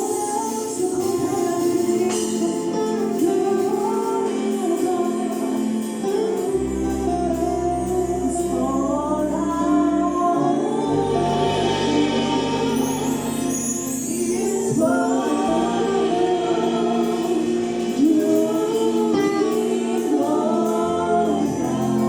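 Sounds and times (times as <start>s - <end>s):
gospel choir singing: 0.0s - 22.0s
held low bass note: 6.7s - 18.6s.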